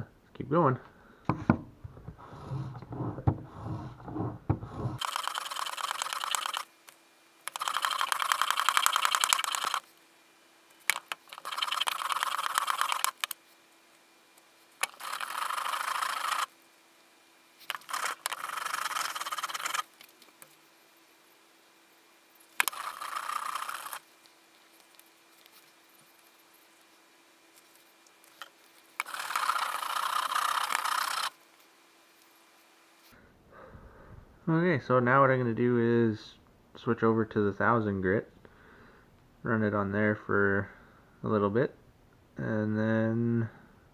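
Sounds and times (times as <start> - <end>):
chisel rasping across sandpaper: 2.1 - 5.8, 17.8 - 19.8.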